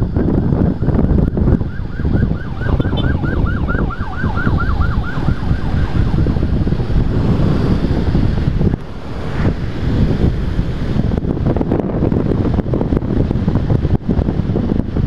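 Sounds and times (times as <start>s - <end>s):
wind buffeting microphone: 0.0s - 15.0s
siren yelping: 1.3s - 7.1s.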